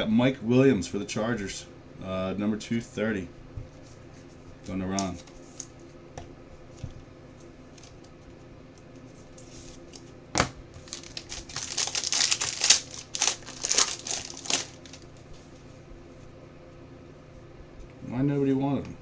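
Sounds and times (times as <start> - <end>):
plastic packaging crinkling: 10.7 - 15.2.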